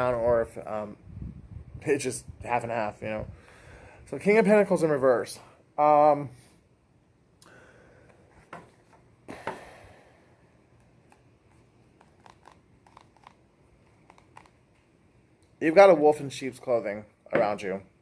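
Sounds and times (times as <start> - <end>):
tarot cards slapping and scraping: 10.7 - 14.6.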